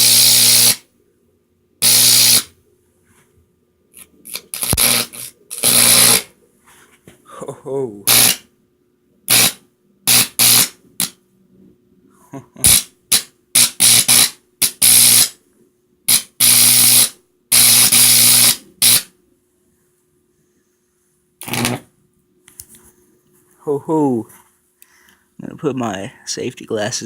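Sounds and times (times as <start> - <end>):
electric arc buzzing: 0.0 - 0.8, 1.8 - 2.6, 4.0 - 6.4, 8.1 - 8.5, 9.3 - 11.2, 12.6 - 15.4, 16.1 - 19.1, 21.4 - 21.9
faint transformer hum: 0.0 - 27.0.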